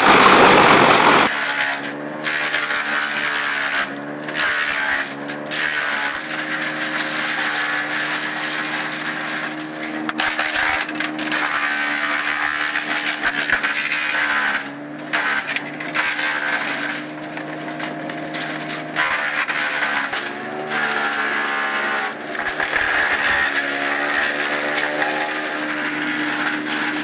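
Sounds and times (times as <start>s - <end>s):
wood being shredded: 0.0s - 1.3s, 10.3s - 27.0s
wood chipper engine drone: 0.0s - 1.3s, 1.9s - 27.0s.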